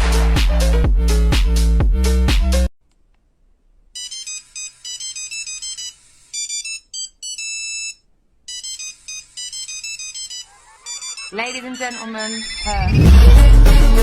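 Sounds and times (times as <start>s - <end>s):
phone ringtone melody: 4.0s - 13.0s.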